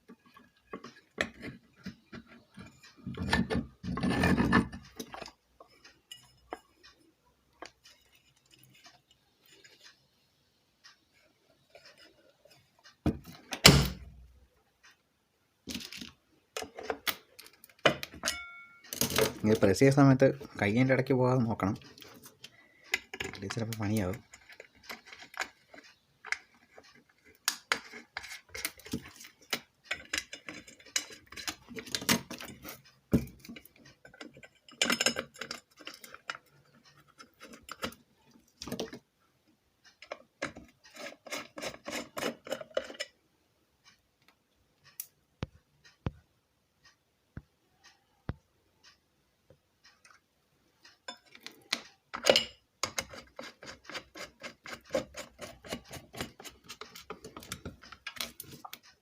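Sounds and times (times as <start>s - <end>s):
metal fan parts clinking: 0.2s - 6.8s, 16.6s - 38.0s.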